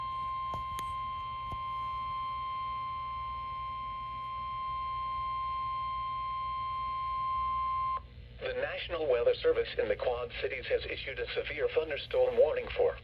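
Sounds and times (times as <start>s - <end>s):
steady alarm tone: 0.0s - 8.1s
low hum: 0.0s - 13.0s.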